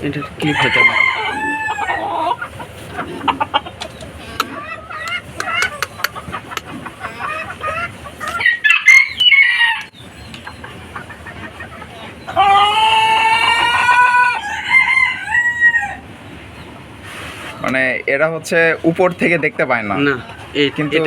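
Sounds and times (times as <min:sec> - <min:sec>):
chickens clucking and squawking: 0:00.0 - 0:21.0
rooster crowing: 0:00.4 - 0:02.4, 0:08.2 - 0:09.9, 0:12.3 - 0:16.1.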